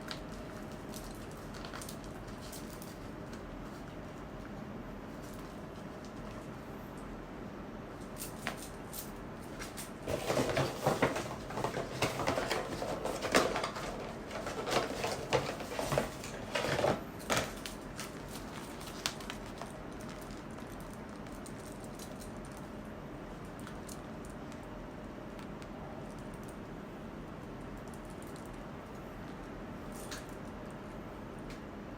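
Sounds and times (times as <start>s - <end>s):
packaging rustling and crinkling: 9.5s - 22.0s.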